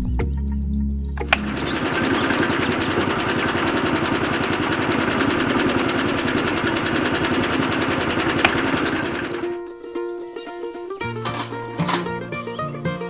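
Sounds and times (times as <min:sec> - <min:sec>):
sharp click: 0:01.2 - 0:02.4, 0:11.2 - 0:12.2
small motor buzzing: 0:01.2 - 0:09.6.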